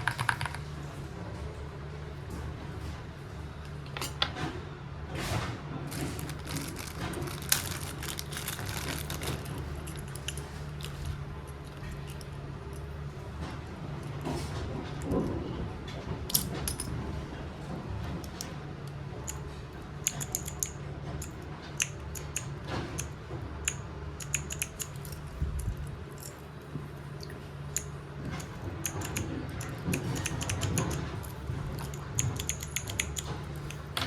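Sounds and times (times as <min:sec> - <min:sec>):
mechanical keyboard typing: 0:00.0 - 0:00.6, 0:20.0 - 0:23.1, 0:23.7 - 0:25.2, 0:27.8 - 0:34.0.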